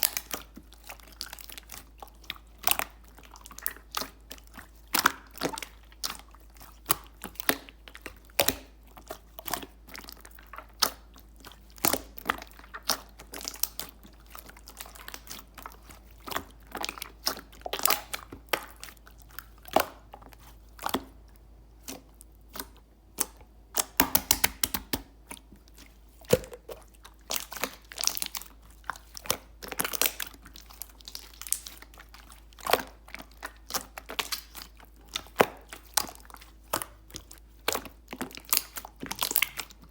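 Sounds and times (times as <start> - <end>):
slime popping and clicking: 23.2 - 25.1, 26.3 - 26.8.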